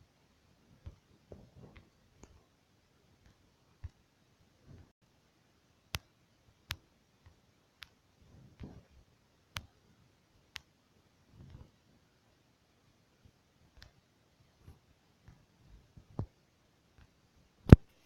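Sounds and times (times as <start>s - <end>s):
faint sharp clicks: 5.9s - 8.0s, 13.8s - 14.0s.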